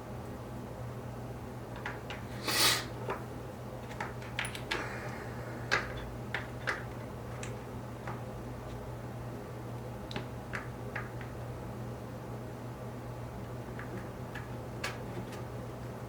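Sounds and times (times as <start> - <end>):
plastic parts clicking and tapping: 5.7 - 8.2.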